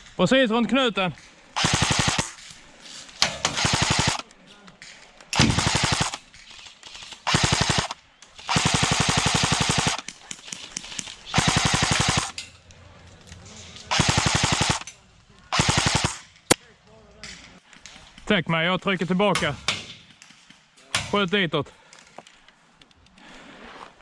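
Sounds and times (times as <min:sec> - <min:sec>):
airsoft rifle firing bursts: 0:01.6 - 0:02.5, 0:03.2 - 0:04.3, 0:05.4 - 0:12.4, 0:13.9 - 0:14.9, 0:15.5 - 0:16.3.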